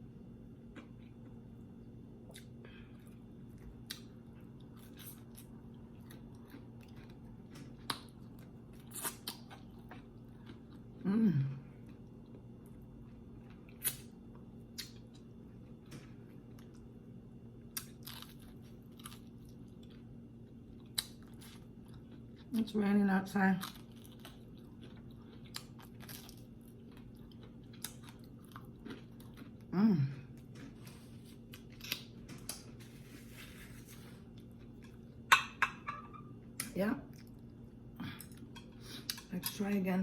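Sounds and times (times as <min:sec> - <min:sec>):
faint steady hum: 0:00.0 - 0:40.0
crispy food crunching: 0:17.6 - 0:29.7.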